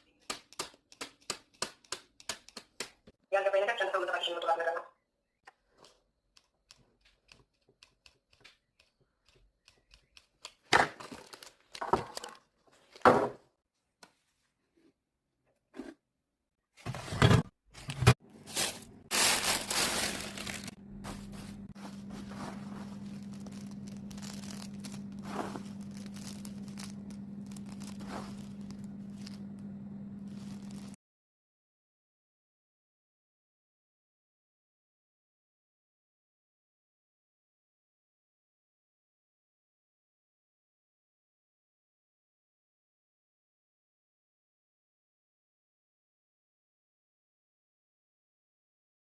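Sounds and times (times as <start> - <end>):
crinkling and tearing: 18.4 - 20.8, 22.5 - 29.6.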